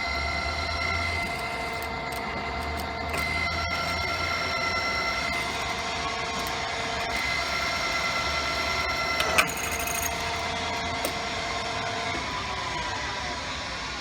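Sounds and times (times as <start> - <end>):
drill press motor whine: 0.0 - 14.0.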